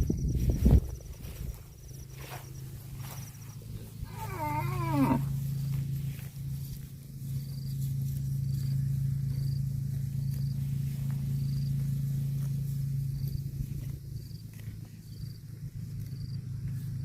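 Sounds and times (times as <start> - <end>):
steady low hum: 0.0 - 17.0
calf mooing: 4.0 - 5.5.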